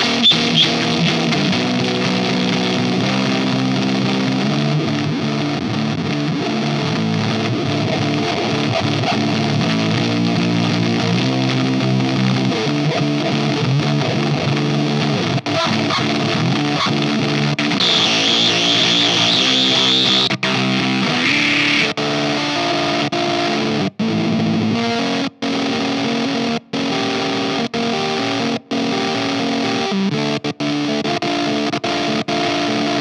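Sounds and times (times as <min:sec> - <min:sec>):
high steady feedback squeal: 0:00.0 - 0:01.2, 0:17.8 - 0:20.4, 0:21.2 - 0:21.9
fuzzed electric guitar riff: 0:00.0 - 0:33.0.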